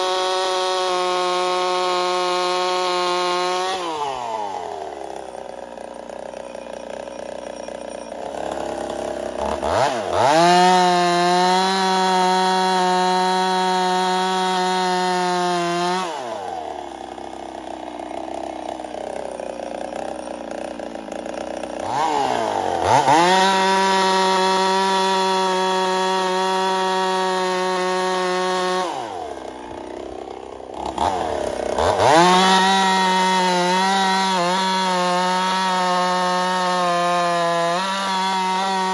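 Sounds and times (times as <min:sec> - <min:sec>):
chainsaw idling: 0:00.0 - 0:38.9
chainsaw revving: 0:00.0 - 0:38.9.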